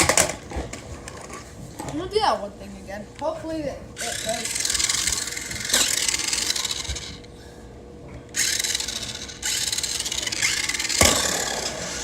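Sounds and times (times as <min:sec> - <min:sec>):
small electric motor: 0:04.0 - 0:07.3, 0:08.3 - 0:12.0.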